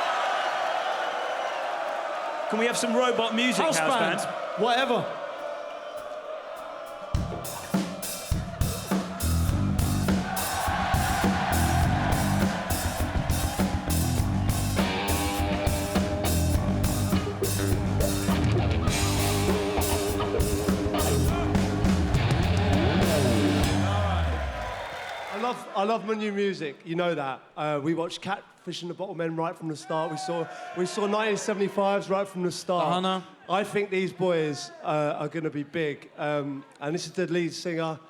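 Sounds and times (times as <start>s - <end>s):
drum kit beat: 6.9s - 24.6s
bass line: 9.2s - 24.6s
guitar: 10.8s - 24.5s.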